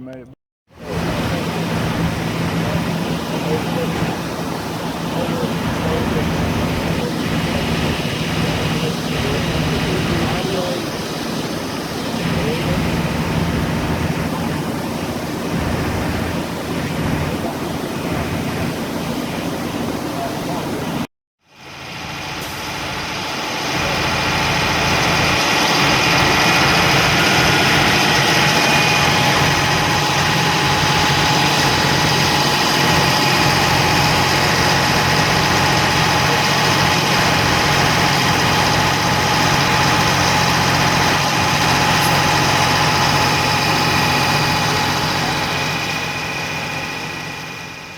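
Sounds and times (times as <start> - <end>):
broad rushing noise: 0.7 - 47.9
vehicle engine running: 0.8 - 21.0, 21.6 - 47.9.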